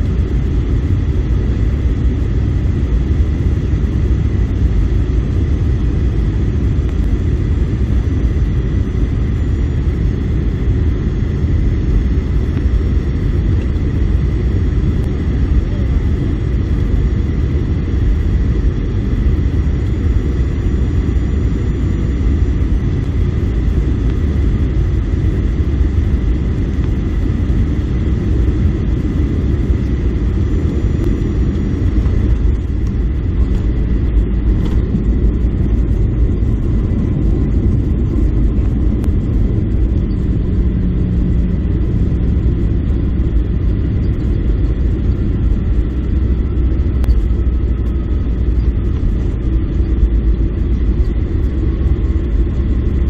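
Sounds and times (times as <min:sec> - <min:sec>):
airliner engines rumbling: 0:00.0 - 0:53.0
faint steady whines: 0:00.0 - 0:53.0.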